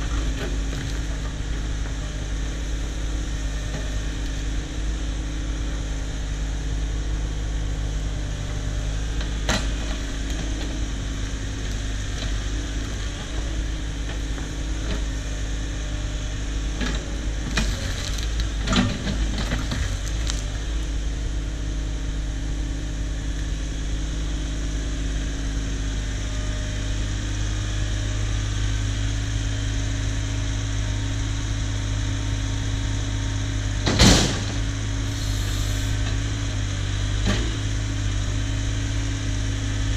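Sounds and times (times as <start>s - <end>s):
excavator diesel engine running: 0.0s - 39.9s
loud thump of logs: 33.8s - 34.7s.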